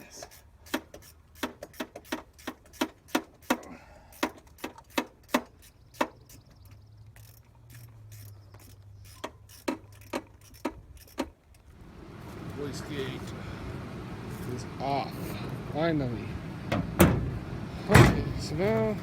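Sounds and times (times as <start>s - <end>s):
ratchet wrench clicking: 0.2s - 11.6s.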